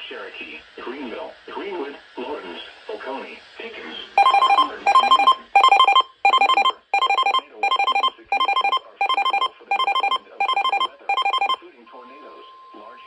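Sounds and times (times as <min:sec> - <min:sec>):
electronic alert beeps: 0:04.2 - 0:11.6.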